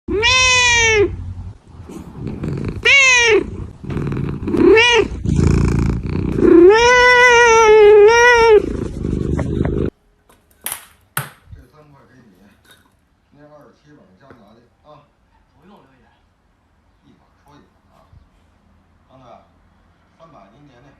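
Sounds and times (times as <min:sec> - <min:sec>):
cat yowling: 0:00.1 - 0:01.2, 0:02.2 - 0:03.7, 0:04.5 - 0:05.2, 0:06.4 - 0:08.8
rasping noise: 0:01.1 - 0:09.9.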